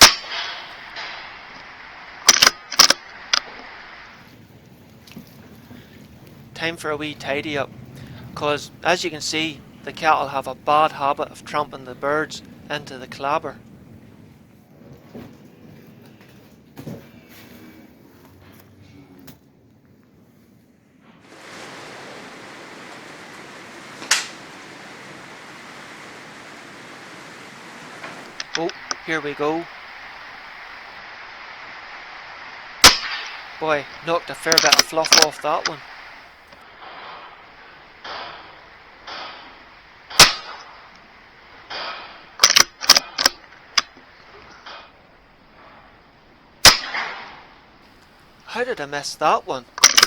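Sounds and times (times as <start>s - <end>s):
sharp loud crack: 0.0s - 4.2s, 23.9s - 25.2s, 28.0s - 40.9s, 41.6s - 43.9s, 46.6s - 47.7s
rain hissing: 0.0s - 16.1s, 20.1s - 50.0s
metallic bolt clicks: 2.3s - 3.4s, 42.4s - 43.4s, 49.8s - 50.0s.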